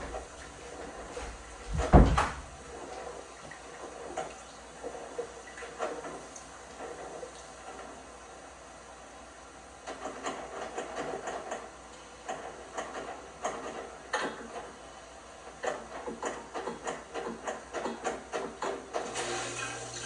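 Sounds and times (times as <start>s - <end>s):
heavy thud: 0.0s - 3.0s
light knocks: 0.0s - 3.6s
washing machine tumbling clothes: 0.0s - 20.0s.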